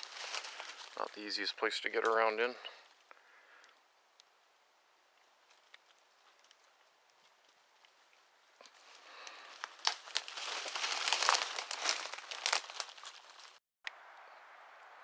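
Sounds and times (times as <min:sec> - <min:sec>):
twigs snapping underfoot: 0:00.0 - 0:01.2, 0:05.1 - 0:13.6.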